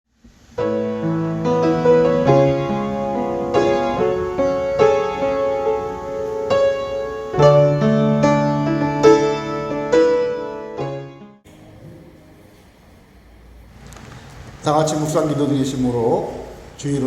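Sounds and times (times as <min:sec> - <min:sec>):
slow keyboard chords: 0:00.6 - 0:16.8.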